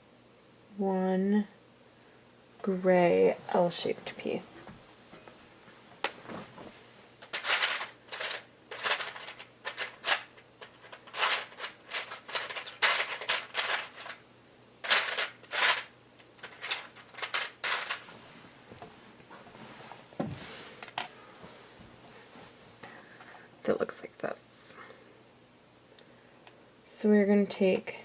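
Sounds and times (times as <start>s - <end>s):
plastic pieces clicking and rattling: 7.2s - 14.2s, 14.8s - 18.0s.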